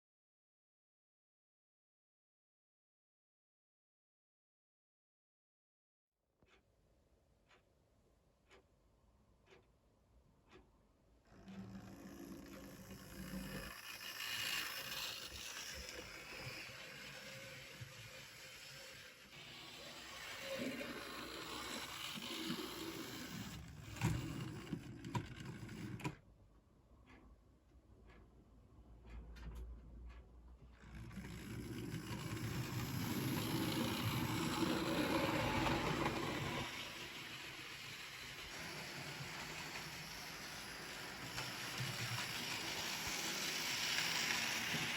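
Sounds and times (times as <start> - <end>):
small electric motor whirring: 11.3 - 26.1, 30.8 - 44.9
model train running on track: 11.5 - 26.1, 30.8 - 44.9.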